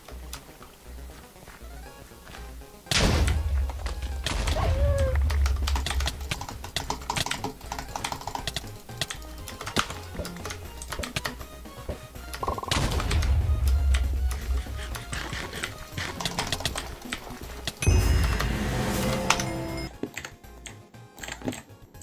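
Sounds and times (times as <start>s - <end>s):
mechanical keyboard clacking: 5.3s - 11.4s.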